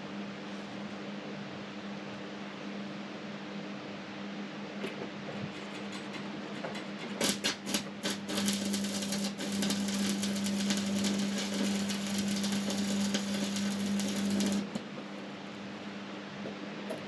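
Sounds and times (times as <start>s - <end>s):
electrical hum: 0.0s - 17.0s
welding arc crackling: 7.0s - 14.8s.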